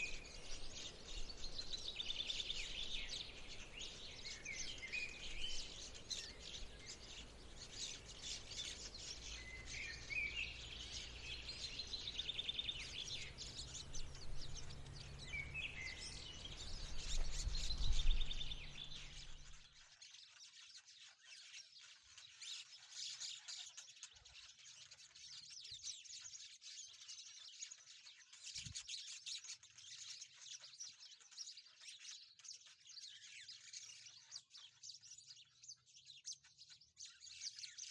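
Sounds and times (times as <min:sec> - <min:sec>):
lovebirds chirping: 0:00.0 - 0:20.1.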